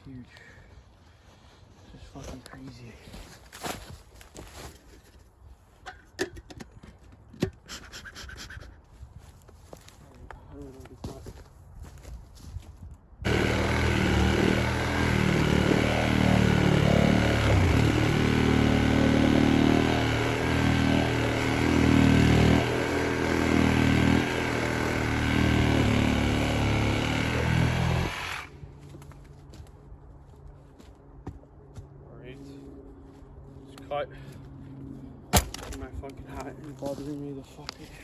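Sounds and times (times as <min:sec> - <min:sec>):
chainsaw cutting through trunk: 0:13.3 - 0:28.5.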